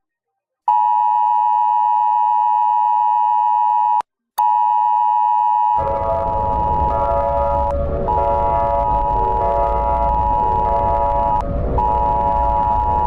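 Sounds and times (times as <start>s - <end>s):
high electronic alert beep: 5.8s - 13.0s
lower steady tones in a chord: 5.8s - 13.0s.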